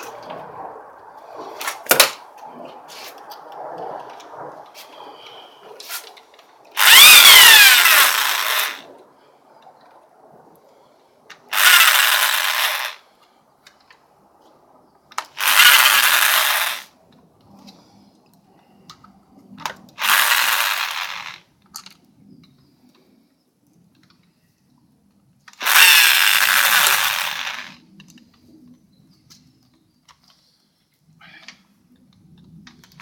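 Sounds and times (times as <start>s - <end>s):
handheld power tool running: 6.8s - 8.8s, 11.5s - 13.0s, 15.2s - 16.9s, 20.0s - 21.4s, 25.6s - 27.8s.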